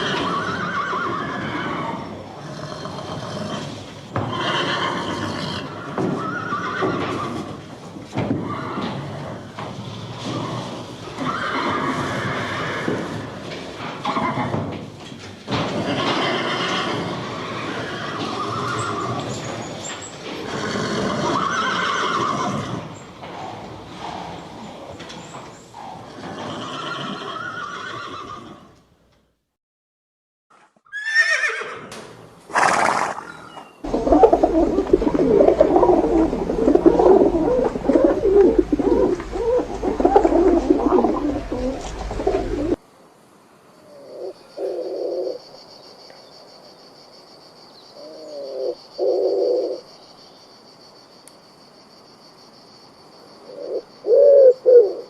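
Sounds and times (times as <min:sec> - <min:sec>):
horses neighing and whinnying: 0:00.0 - 0:28.8, 0:30.9 - 0:42.8.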